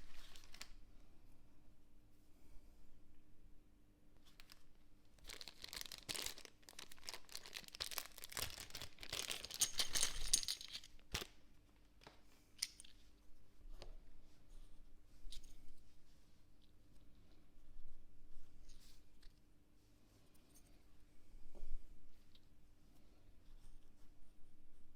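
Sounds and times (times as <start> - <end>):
packaging crinkling and tearing: 0.0 - 0.8, 4.2 - 11.3.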